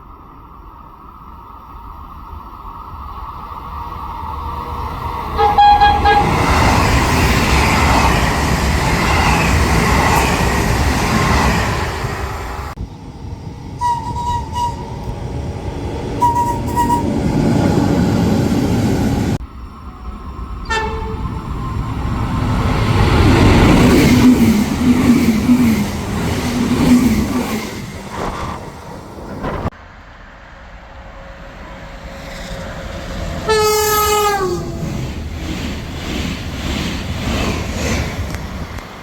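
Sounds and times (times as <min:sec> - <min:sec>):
train rushing by: 0:00.0 - 0:39.0
train horn blasts: 0:05.4 - 0:06.7, 0:13.8 - 0:15.1, 0:16.2 - 0:17.2, 0:20.6 - 0:21.5, 0:33.4 - 0:34.8.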